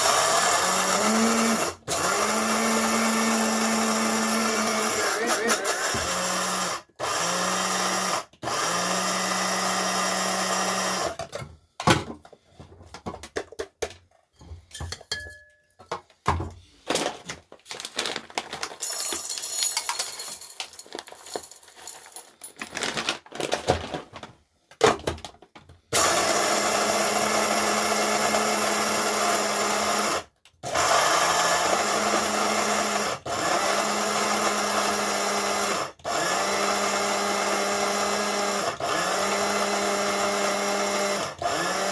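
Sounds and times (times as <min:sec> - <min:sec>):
coffee grinder motor running: 0:00.0 - 0:11.2, 0:26.0 - 0:41.9
knocks and rattles of handling: 0:11.2 - 0:25.9.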